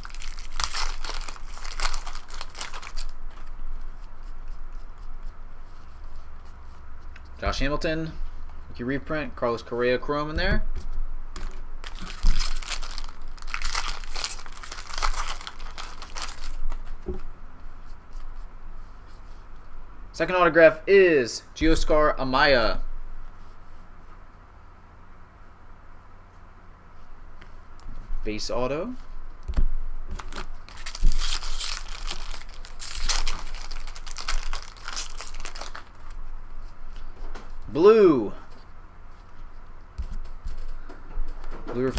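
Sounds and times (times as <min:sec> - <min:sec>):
foil wrapper crinkling: 0:00.0 - 0:03.8, 0:11.4 - 0:17.0, 0:30.1 - 0:36.2.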